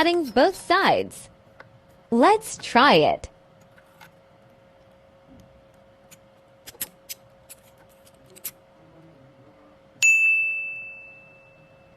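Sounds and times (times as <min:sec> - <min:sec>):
faint steady hum: 0:00.0 - 0:11.9
metallic ding ringing: 0:10.0 - 0:11.9.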